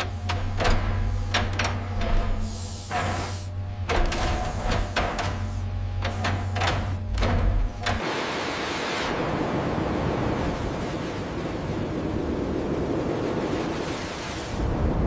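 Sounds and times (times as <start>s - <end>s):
rushing water: 7.8s - 15.0s.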